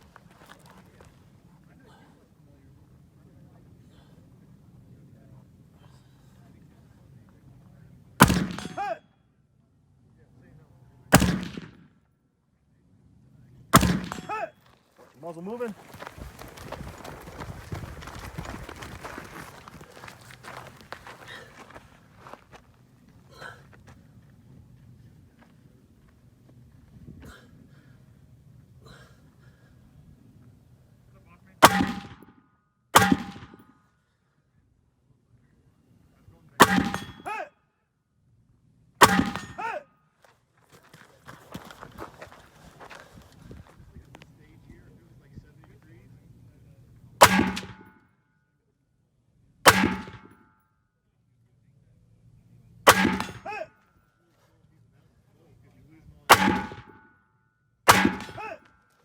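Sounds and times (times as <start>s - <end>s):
rifle shots: 8.2s - 8.8s, 11.1s - 11.9s, 13.8s - 14.4s, 31.6s - 32.3s, 33.0s - 33.7s, 36.6s - 37.2s, 39.0s - 39.6s, 47.2s - 47.9s, 49.7s - 50.4s, 52.9s - 53.5s, 56.3s - 57.1s, 57.9s - 58.5s
bullet ringing steel target: 8.2s - 9.0s, 13.8s - 14.6s, 31.6s - 32.4s, 33.0s - 33.8s, 36.6s - 37.4s, 39.0s - 39.8s, 47.2s - 48.1s, 49.6s - 50.6s, 52.8s - 53.8s, 56.3s - 57.2s, 57.9s - 58.6s.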